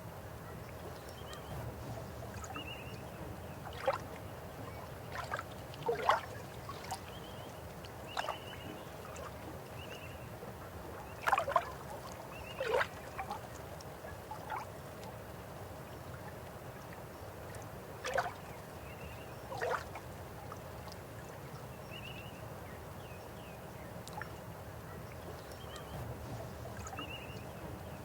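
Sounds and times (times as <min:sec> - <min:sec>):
water gurgling and splashing: 0:05.1 - 0:07.0.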